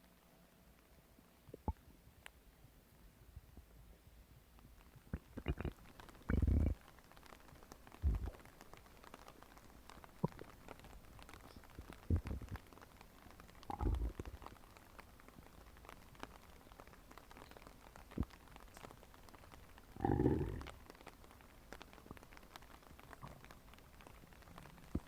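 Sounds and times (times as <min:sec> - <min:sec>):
faint clicks: 0:00.0 - 0:02.4, 0:04.5 - 0:25.0
stomach growling and gurgling: 0:01.4 - 0:01.8, 0:04.8 - 0:08.6, 0:09.9 - 0:12.8, 0:13.4 - 0:14.7, 0:17.3 - 0:19.0, 0:19.8 - 0:21.1, 0:22.0 - 0:25.0.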